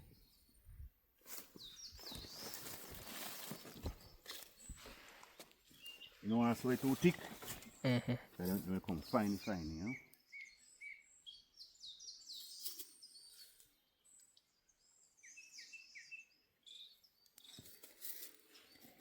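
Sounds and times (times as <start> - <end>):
faint birdsong chirps: 0.0 - 19.0.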